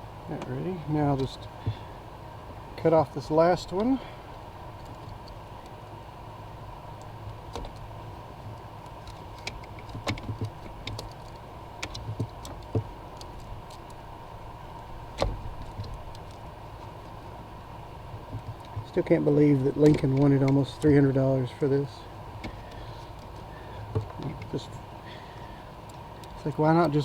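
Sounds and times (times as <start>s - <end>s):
steady background hum: 0.0s - 27.0s
sharp clicks and knocks: 7.0s - 14.0s, 15.1s - 16.4s, 18.2s - 21.1s, 22.4s - 24.6s.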